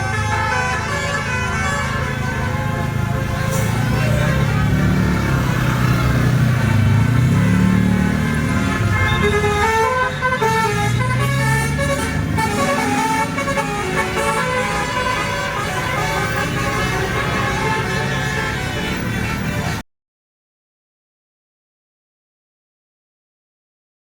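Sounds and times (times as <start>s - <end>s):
multi-tone bus horn tune: 0.0s - 19.8s.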